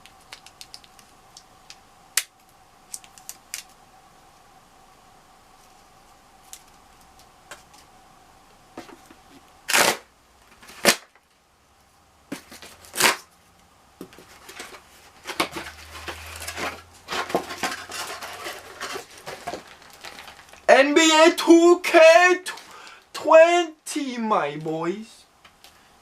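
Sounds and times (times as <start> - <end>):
packaging ripping: 9.7 - 11.2, 12.5 - 13.3, 15.3 - 20.7
packaging crinkling and rustling: 12.3 - 13.3, 14.1 - 20.7.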